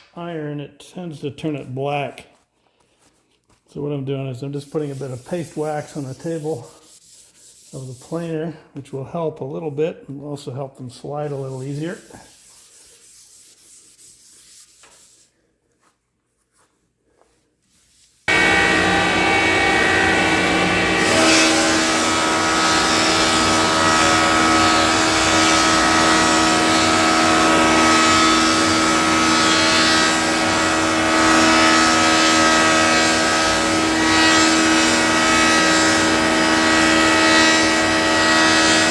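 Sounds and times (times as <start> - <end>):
thickness planer running: 18.3 - 38.9.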